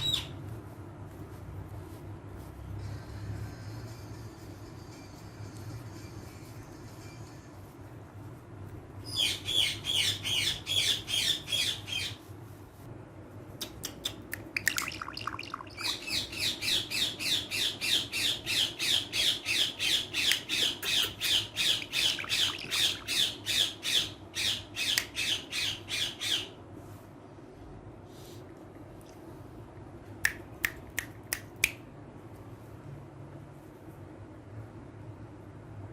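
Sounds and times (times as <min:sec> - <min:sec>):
parrot squawking: 0:00.0 - 0:00.3, 0:09.1 - 0:12.2, 0:14.6 - 0:26.6.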